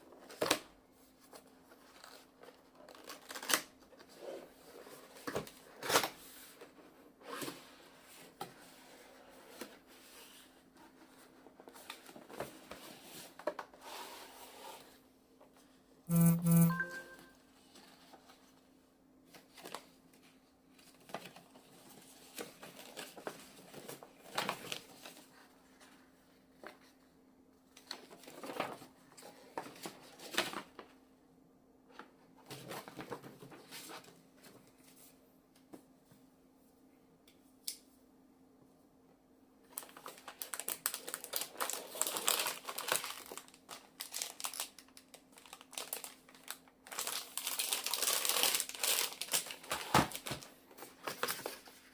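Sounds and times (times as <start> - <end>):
packaging crinkling and rustling: 1.3 - 4.2, 20.8 - 25.4, 39.7 - 51.9.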